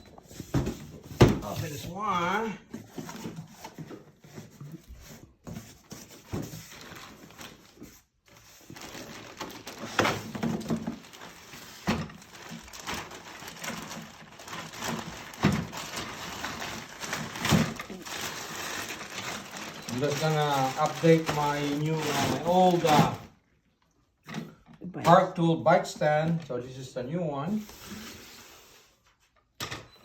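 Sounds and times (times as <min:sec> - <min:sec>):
packaging rustling and crinkling: 0:00.0 - 0:23.3.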